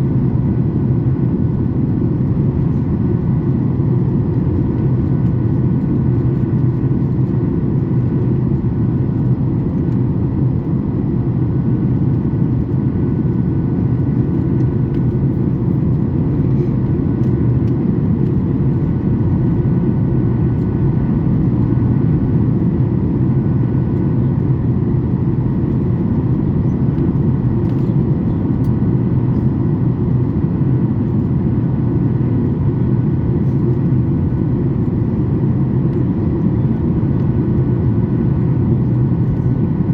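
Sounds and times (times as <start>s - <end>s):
airplane cabin roar: 0.0s - 39.9s.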